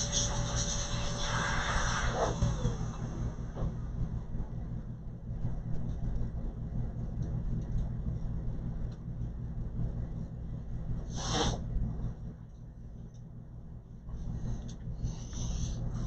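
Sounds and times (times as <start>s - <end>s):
low mechanical hum: 0.0s - 16.0s
compressed air hiss: 11.1s - 11.6s.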